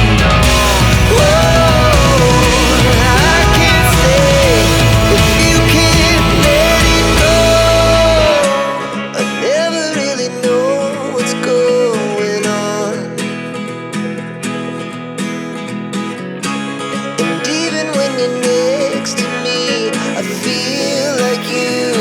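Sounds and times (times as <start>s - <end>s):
deep bass: 0.0s - 8.4s
plucked guitar: 0.0s - 22.0s.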